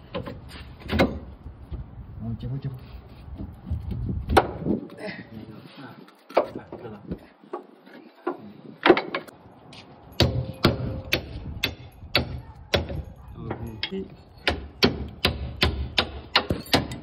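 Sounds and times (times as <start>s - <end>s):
hand tools knocking on metal: 10.2s - 17.0s.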